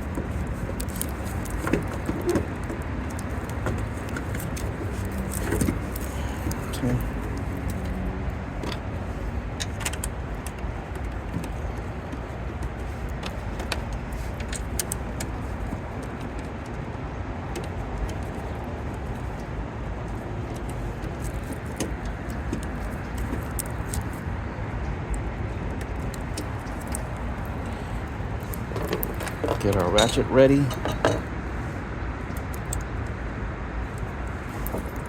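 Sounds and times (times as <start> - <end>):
small hardware clinking: 28.4 - 31.3.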